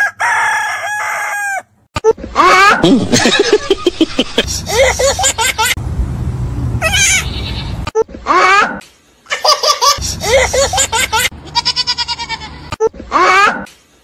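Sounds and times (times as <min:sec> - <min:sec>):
baby laughing: 0:02.4 - 0:05.8, 0:08.3 - 0:11.8.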